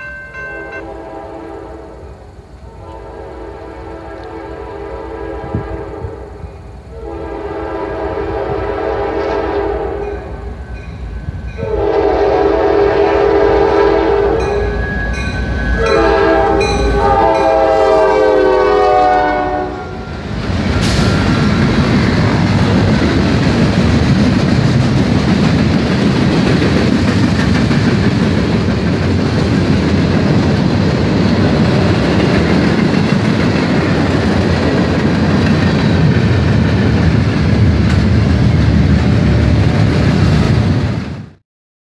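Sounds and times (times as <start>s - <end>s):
locomotive horn blasts: 0.0s - 10.5s, 11.6s - 15.2s, 15.8s - 20.3s
train cars rumbling past: 0.0s - 41.4s.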